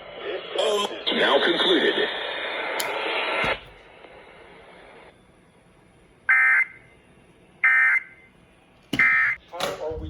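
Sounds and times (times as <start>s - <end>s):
broadcast audio: 0.0s - 5.2s, 9.0s - 10.0s.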